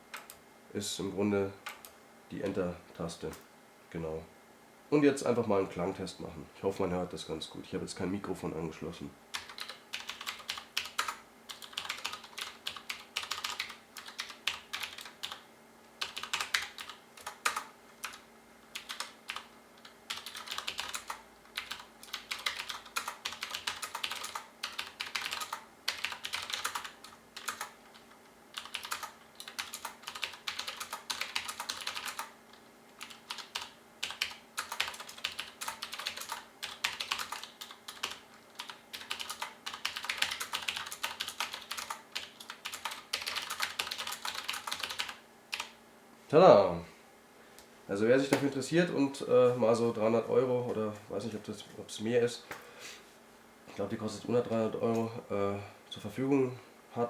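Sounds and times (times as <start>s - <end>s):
clicky mechanical keyboard typing: 9.3s - 15.4s, 16.0s - 18.2s, 18.8s - 32.4s, 33.0s - 45.7s.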